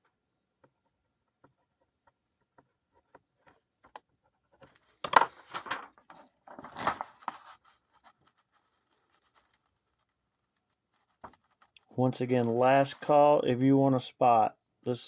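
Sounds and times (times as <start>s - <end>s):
rustling scraping handling noise: 4.4s - 13.4s.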